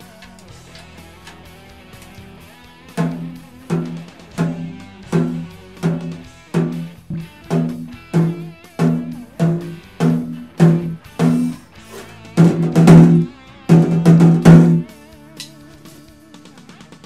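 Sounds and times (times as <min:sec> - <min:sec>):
snare drum hits ringing: 0:03.0 - 0:11.6, 0:12.4 - 0:14.8.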